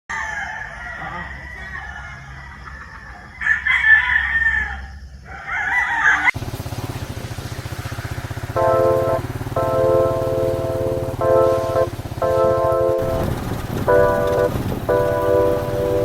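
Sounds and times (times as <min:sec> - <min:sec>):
roosters crowing: 0:00.1 - 0:06.4
music: 0:08.6 - 0:16.0.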